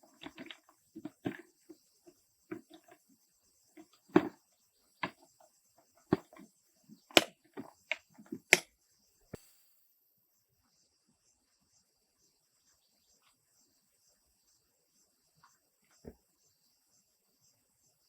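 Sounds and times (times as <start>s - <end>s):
irregular knocks and taps: 0.0s - 3.0s, 3.8s - 4.4s, 5.0s - 8.7s
insects chirring: 0.0s - 18.0s.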